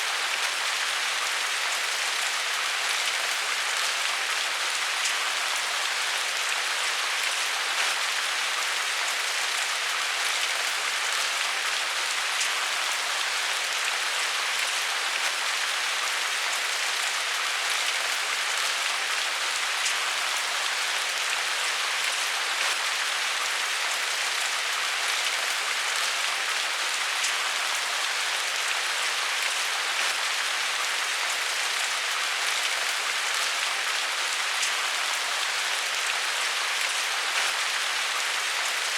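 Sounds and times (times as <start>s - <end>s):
steady rain falling: 0.0s - 38.9s.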